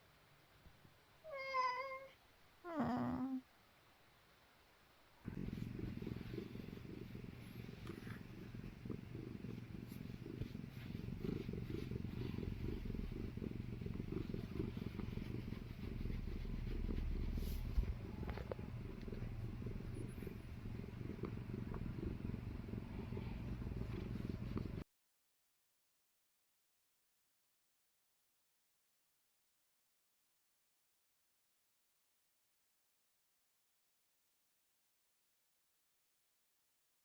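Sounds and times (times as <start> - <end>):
cat purring: 1.8 - 3.4, 5.2 - 24.8.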